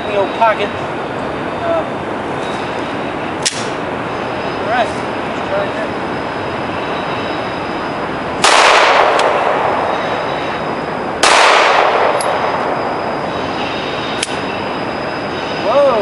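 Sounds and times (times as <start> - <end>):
train running: 0.0 - 16.0
pistol shots with echo: 8.4 - 9.9, 11.2 - 12.8.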